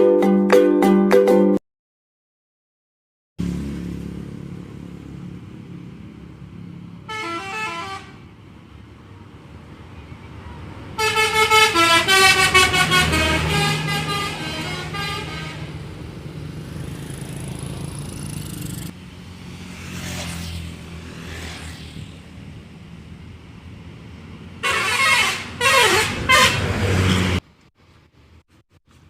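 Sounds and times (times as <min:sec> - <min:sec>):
bus engine rumble: 0:03.4 - 0:29.0
passing traffic: 0:03.4 - 0:29.0
bus multi-tone horn: 0:07.0 - 0:08.3, 0:11.0 - 0:15.9, 0:24.6 - 0:27.4.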